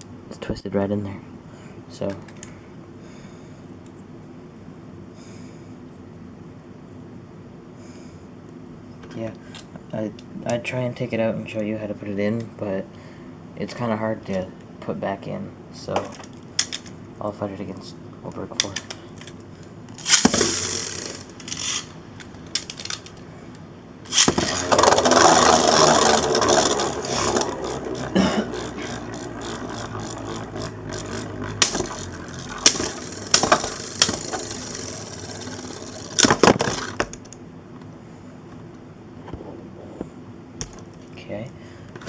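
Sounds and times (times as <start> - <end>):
spinning tops clacking together: 19.9 - 23.2, 24.1 - 37.1
spinning tops whirring and scraping: 19.9 - 23.2, 24.0 - 37.1
spinning tops launching: 20.0 - 23.2, 24.1 - 37.1.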